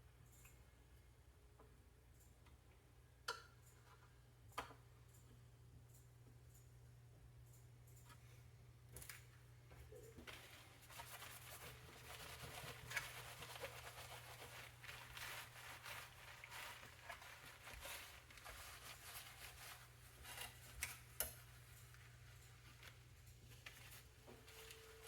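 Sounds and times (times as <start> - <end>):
faint rubbing and scraping: 10.3 - 20.8.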